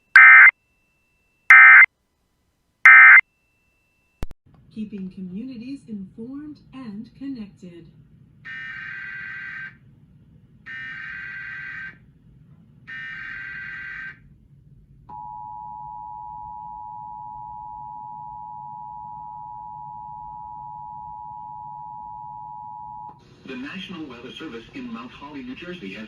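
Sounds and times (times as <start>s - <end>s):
two-tone attention signal: 0.0s - 0.5s, 1.5s - 1.9s, 2.9s - 3.2s
warbling data bursts: 0.1s - 0.5s, 1.5s - 1.9s, 2.9s - 3.2s.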